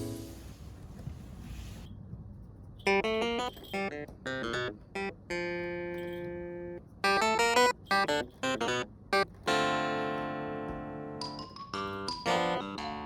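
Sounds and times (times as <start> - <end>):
held chords: 2.8 - 13.0.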